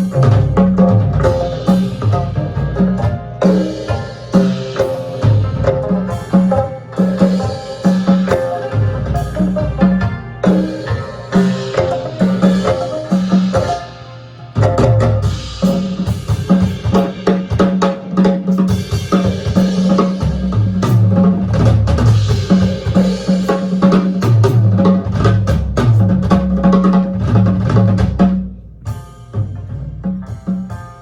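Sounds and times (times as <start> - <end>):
plucked zither bass notes: 0.0 - 16.2, 24.2 - 30.7
drum kit playing busy pattern: 0.0 - 31.0.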